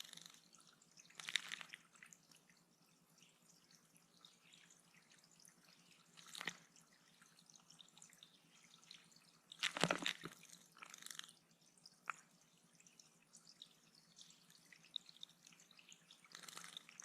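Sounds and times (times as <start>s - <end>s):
water dripping into a pond: 0.0s - 17.0s
water splashing: 8.8s - 11.3s.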